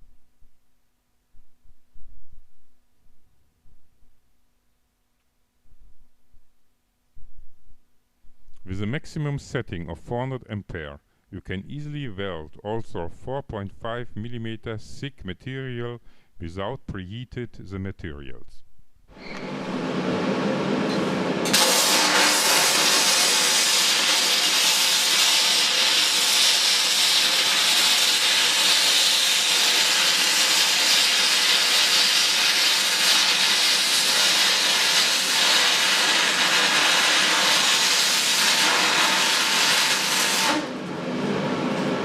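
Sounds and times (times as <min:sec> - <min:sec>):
welding arc crackling hiss: 0:21.4 - 0:40.8.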